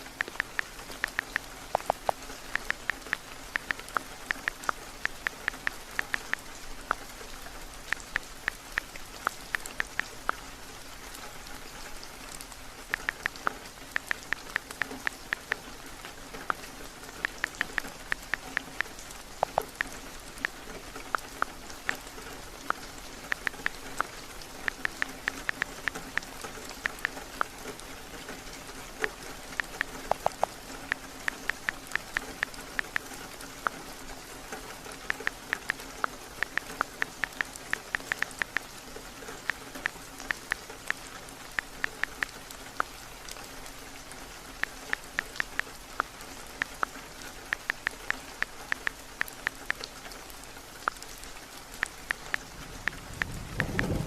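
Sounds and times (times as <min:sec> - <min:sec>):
typing on a touchscreen keyboard: 0:00.0 - 0:07.0, 0:07.9 - 0:10.4, 0:13.0 - 0:15.7, 0:16.4 - 0:22.0, 0:22.7 - 0:27.6, 0:29.0 - 0:33.8, 0:35.0 - 0:38.7
heavy steady rain: 0:00.0 - 0:54.0.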